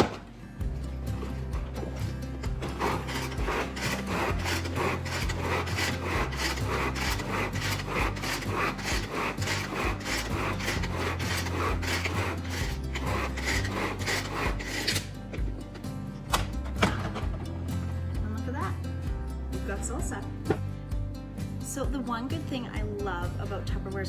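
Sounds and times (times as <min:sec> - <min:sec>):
blades chopping vegetables: 0:01.1 - 0:15.7.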